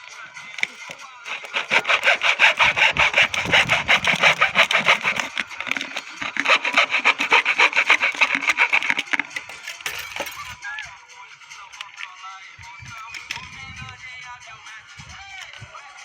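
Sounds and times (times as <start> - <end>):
sandpaper rubbing on wood: 1.3 - 9.3.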